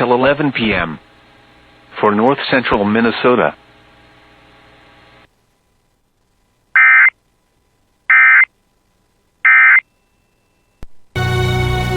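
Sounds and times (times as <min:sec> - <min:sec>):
warbling digital data tones: 0:09.4 - 0:10.8.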